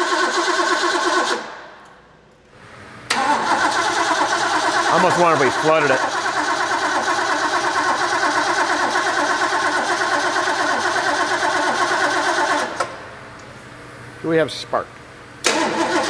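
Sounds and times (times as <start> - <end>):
starter cranking engine: 0.0 - 1.4, 3.1 - 12.9, 15.5 - 16.0.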